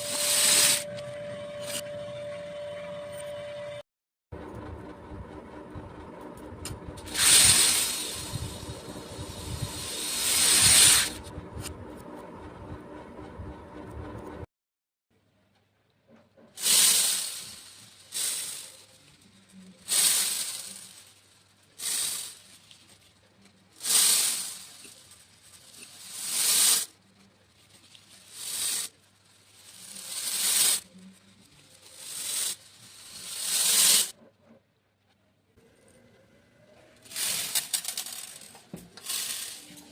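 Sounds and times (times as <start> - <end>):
beads pouring rattling: 7.1 - 11.2, 16.6 - 23.2, 23.8 - 26.9, 27.6 - 34.1, 37.1 - 39.9.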